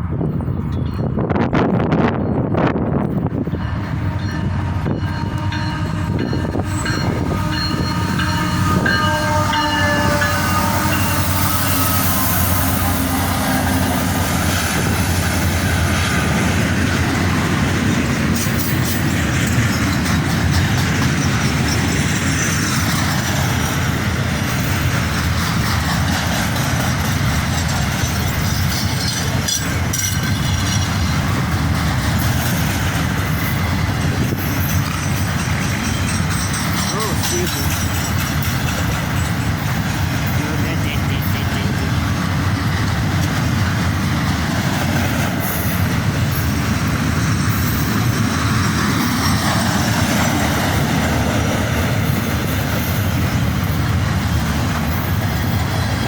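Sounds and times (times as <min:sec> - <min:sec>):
train clanks: 0:00.0 - 0:56.0
train rumbling by: 0:00.0 - 0:56.0
train horn chord: 0:04.1 - 0:14.2.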